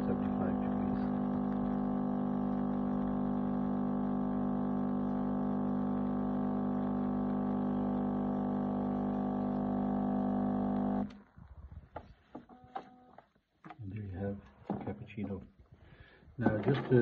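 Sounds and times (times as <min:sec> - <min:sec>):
coffee machine pump humming: 0:00.0 - 0:11.4.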